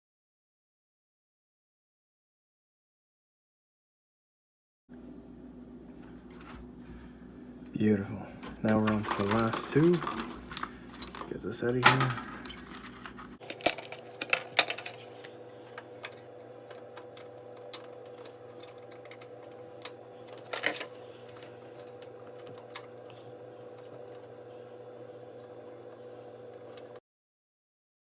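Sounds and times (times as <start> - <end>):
low electrical hum: 4.9 - 27.0
hands handling computer parts: 8.4 - 24.5.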